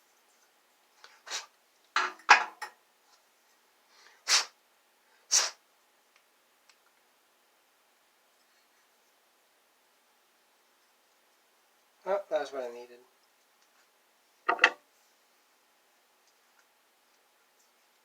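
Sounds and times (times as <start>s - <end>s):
objects clattering and scraping: 14.5s - 14.8s.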